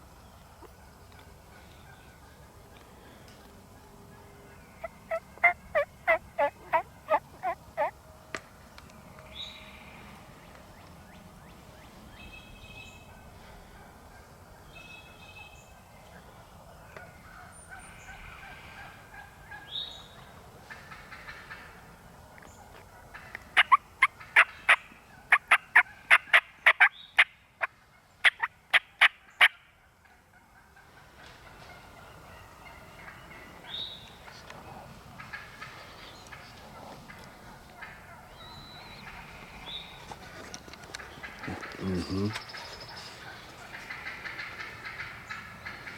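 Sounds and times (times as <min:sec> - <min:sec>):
turkey calling: 0:04.5 - 0:08.0, 0:22.7 - 0:45.9.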